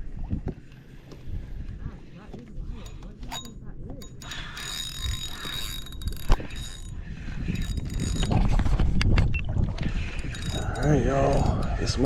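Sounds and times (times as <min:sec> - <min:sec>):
fishing reel whirring: 0:02.7 - 0:09.0, 0:09.9 - 0:12.0.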